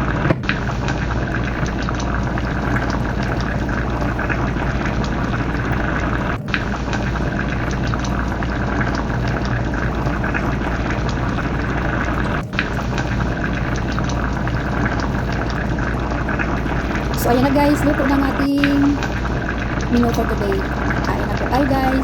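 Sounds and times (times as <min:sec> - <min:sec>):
curry bubbling in a pan: 0:00.0 - 0:22.0.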